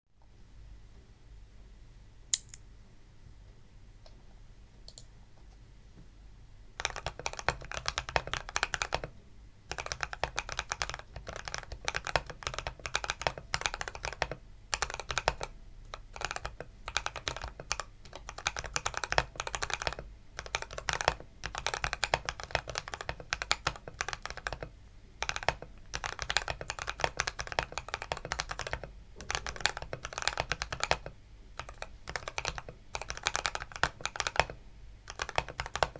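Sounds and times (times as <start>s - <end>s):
typing on mechanical keyboard: 6.8s - 9.1s, 9.7s - 35.9s.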